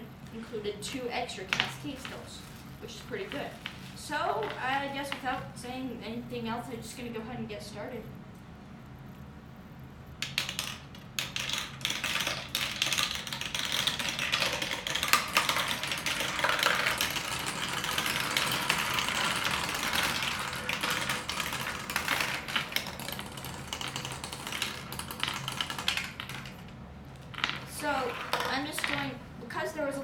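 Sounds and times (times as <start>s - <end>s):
marbles rolling and clicking: 3.2s - 5.2s, 10.2s - 29.2s.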